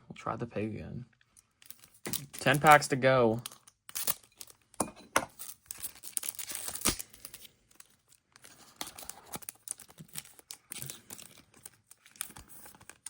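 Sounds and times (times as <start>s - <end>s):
plastic wrapper crinkling and tearing: 1.2s - 13.0s.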